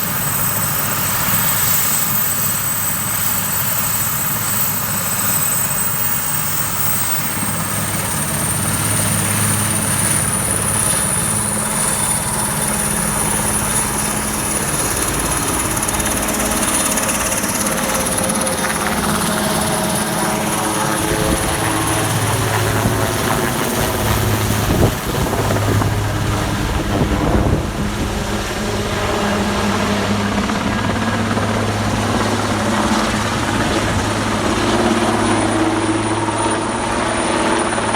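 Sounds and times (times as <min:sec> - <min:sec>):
helicopter rotor and turbine: 0:00.0 - 0:37.9.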